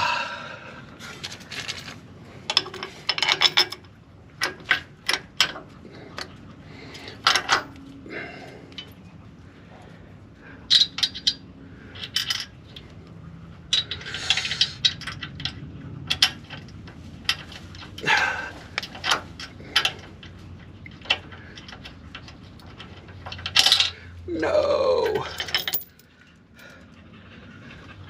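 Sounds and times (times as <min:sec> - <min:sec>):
hand tools clinking on steel parts: 0:01.2 - 0:06.3, 0:13.7 - 0:24.0, 0:24.9 - 0:26.7.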